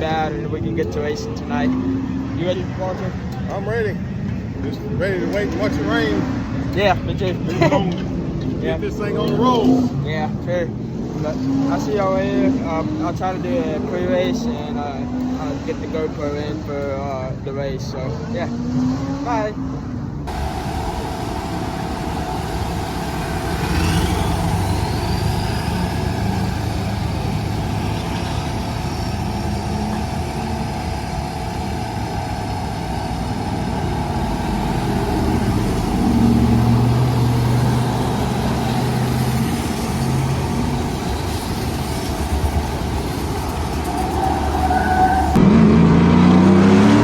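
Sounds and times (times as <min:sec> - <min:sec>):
road noise: 0:00.0 - 0:47.0
vehicle engine running: 0:20.3 - 0:47.0.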